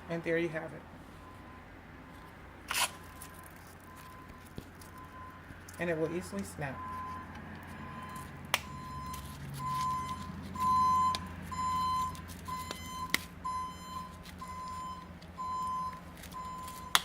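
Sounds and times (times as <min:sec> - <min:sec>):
pulsing beeping tone: 0:07.8 - 0:16.9.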